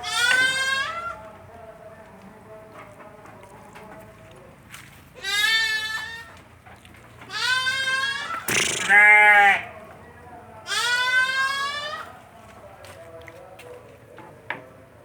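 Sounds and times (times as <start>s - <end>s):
goats bleating: 7.3s - 9.7s, 10.7s - 12.0s.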